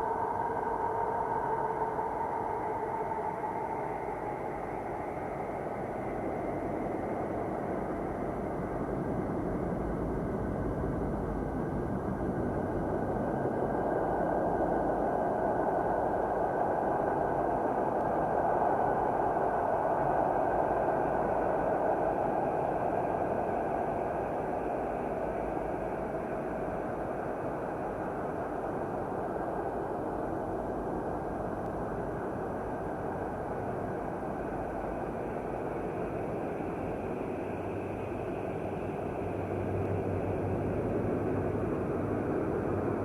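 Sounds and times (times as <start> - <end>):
rumbling hissing drone: 12.4 - 43.0.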